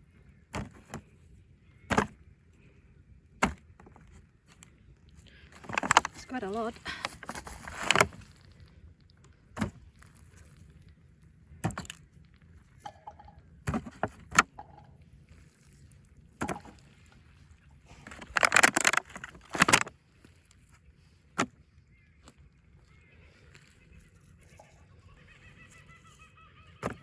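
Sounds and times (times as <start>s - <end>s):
fruit knocking into bag: 3.4s - 4.0s.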